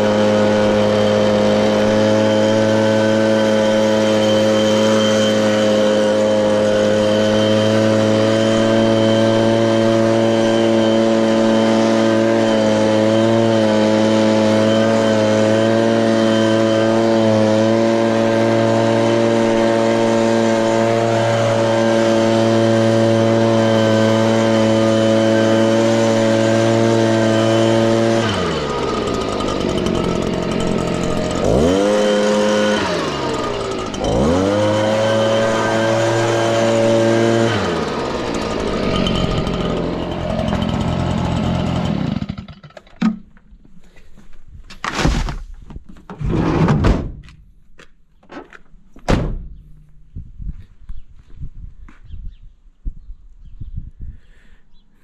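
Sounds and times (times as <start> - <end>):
leaf blower engine running: 0.0 - 43.0.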